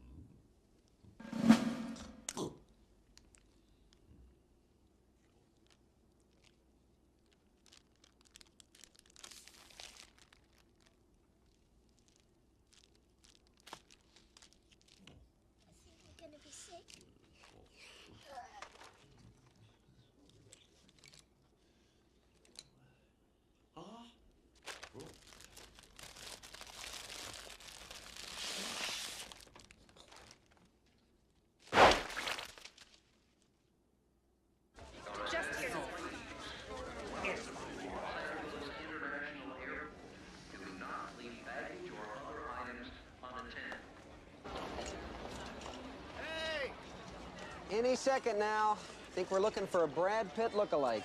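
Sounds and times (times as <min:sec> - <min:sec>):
rustling and crinkling with clicks: 0:02.3 - 0:22.8, 0:24.5 - 0:33.6
paper bag bursting: 0:07.7 - 0:10.9, 0:24.6 - 0:30.6, 0:31.6 - 0:33.0.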